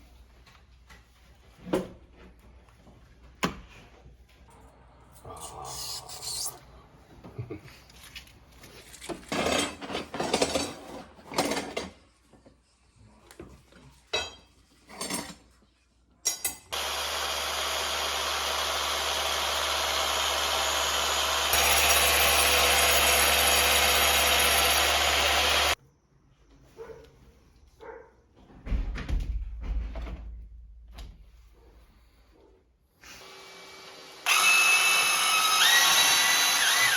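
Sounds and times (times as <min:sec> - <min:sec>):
scraping and handling noises: 0:07.2 - 0:12.7
power tool running: 0:16.7 - 0:25.8, 0:33.0 - 0:36.9.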